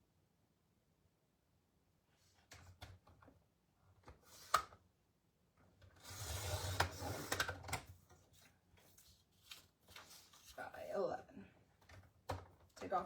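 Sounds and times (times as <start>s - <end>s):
paper being handled: 8.8s - 10.7s.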